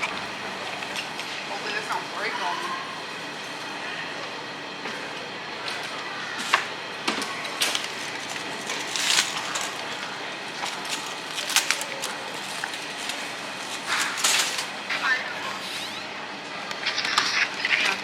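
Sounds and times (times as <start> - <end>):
store background noise: 0.0 - 18.0
goods and shopping cart clattering: 5.7 - 14.8.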